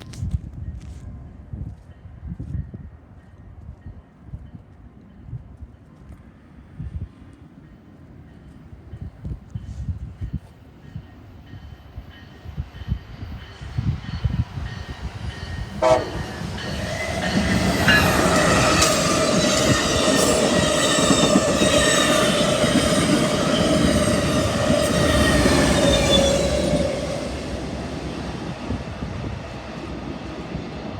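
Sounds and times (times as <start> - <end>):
passing train rumble: 6.2 - 30.9
locomotive horn chord: 15.8 - 18.4.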